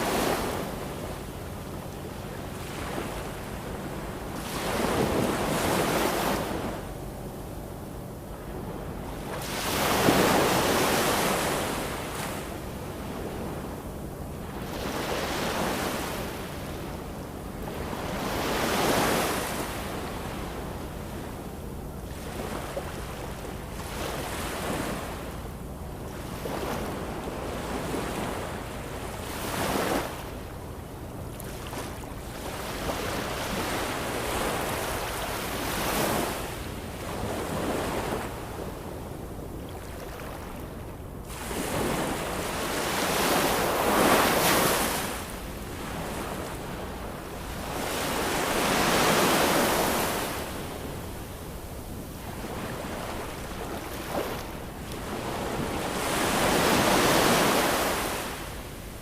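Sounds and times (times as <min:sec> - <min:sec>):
waves surging and washing back: 0:00.0 - 0:59.0.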